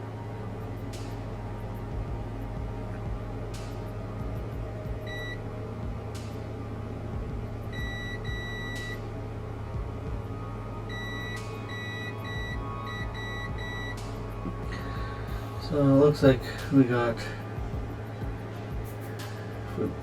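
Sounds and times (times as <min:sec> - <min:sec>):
steady low hum: 0:00.0 - 0:20.0
multimeter continuity beeps: 0:05.1 - 0:05.4, 0:07.7 - 0:09.0, 0:10.9 - 0:14.1.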